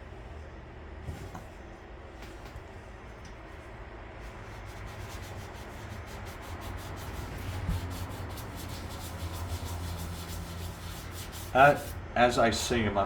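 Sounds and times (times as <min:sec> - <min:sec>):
steady low hum: 0:00.0 - 0:13.0
hand rubbing painted metal: 0:04.2 - 0:12.0.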